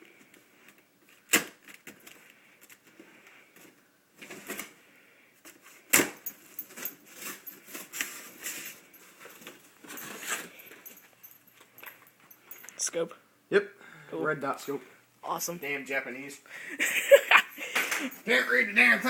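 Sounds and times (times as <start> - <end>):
packaging rustling and clattering: 0.2 - 4.8, 5.4 - 12.6.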